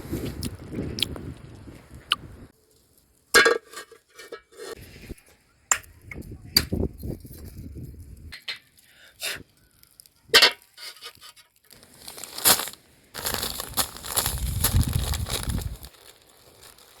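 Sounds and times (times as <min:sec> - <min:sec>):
cookware and utensils clinking: 0:10.3 - 0:11.1.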